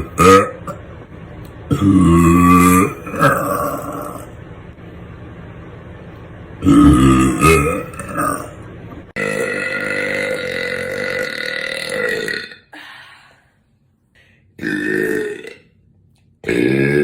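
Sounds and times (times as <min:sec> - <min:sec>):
woman burping loudly: 0:00.0 - 0:00.8, 0:01.7 - 0:04.3, 0:09.2 - 0:12.8, 0:14.6 - 0:15.8, 0:16.4 - 0:17.0.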